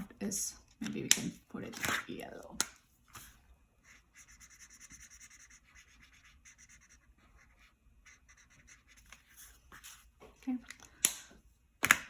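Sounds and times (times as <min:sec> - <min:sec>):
marker scratching on paper: 0:03.2 - 0:10.1.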